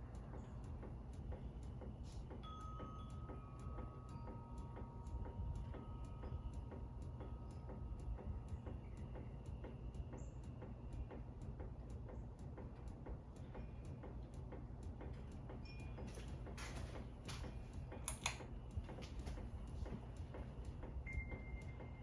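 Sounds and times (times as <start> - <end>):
ceiling fan humming: 0.0 - 22.0
fan ticking: 0.0 - 22.0
fan swishing: 12.2 - 22.0.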